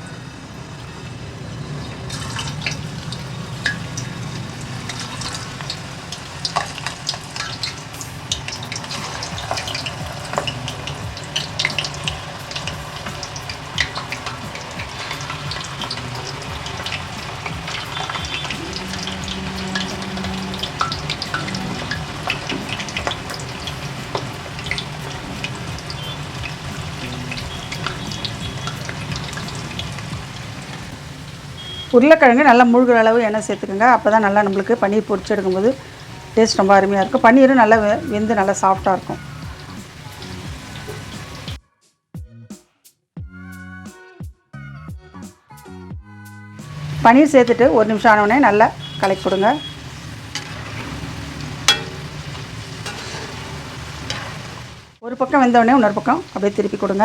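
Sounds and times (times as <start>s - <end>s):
food deep-frying in oil: 0.0s - 41.6s, 46.6s - 57.0s
small crackling pops: 4.8s - 31.0s.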